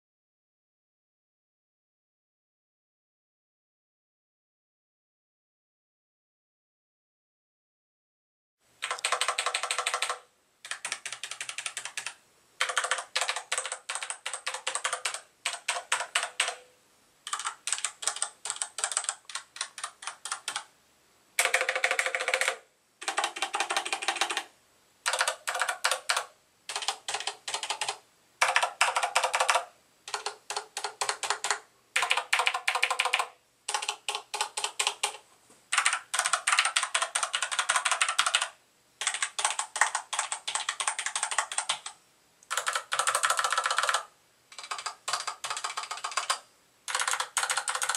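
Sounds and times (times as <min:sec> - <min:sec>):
typing on mechanical keyboard: 0:08.8 - 0:16.7, 0:17.3 - 0:20.7, 0:21.4 - 0:47.9.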